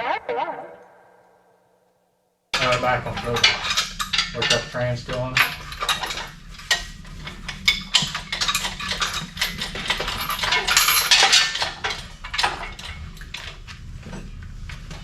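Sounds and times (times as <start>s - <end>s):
metal tools clinking: 2.6s - 14.3s.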